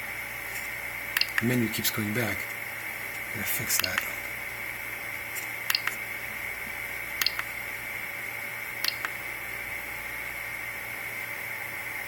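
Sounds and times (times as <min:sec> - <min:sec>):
steady hiss with high whine: 0:00.0 - 0:12.0
knob and button clicks: 0:07.2 - 0:07.5, 0:08.8 - 0:09.2.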